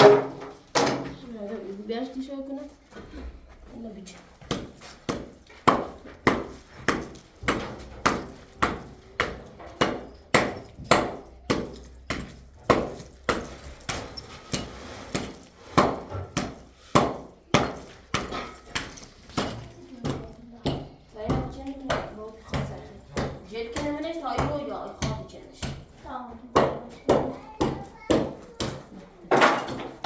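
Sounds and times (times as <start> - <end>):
hand tool striking: 4.4 - 25.8.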